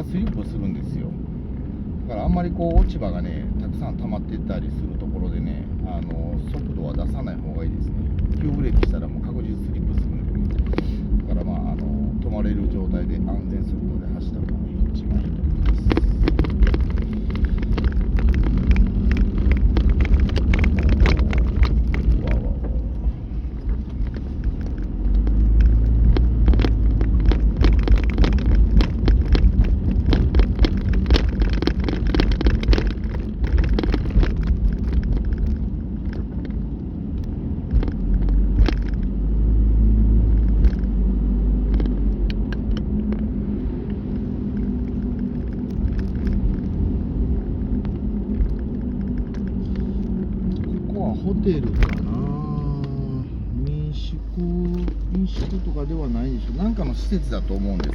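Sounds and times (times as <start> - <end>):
wind rumble inside car: 0.0 - 57.9
sharp ticks and taps: 14.4 - 22.5, 23.9 - 39.1.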